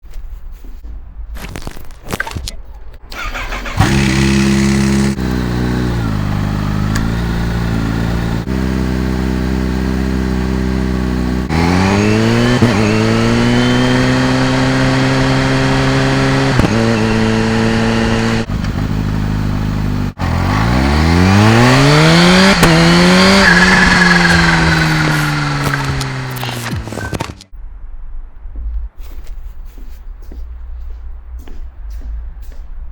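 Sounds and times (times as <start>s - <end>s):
motorcycle engine revving: 3.2s - 27.5s
supercharger whine: 3.6s - 27.5s.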